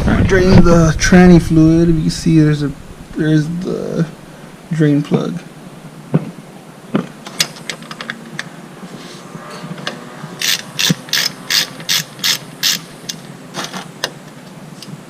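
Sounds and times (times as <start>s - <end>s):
ratchet wrench clicking: 10.4s - 12.9s.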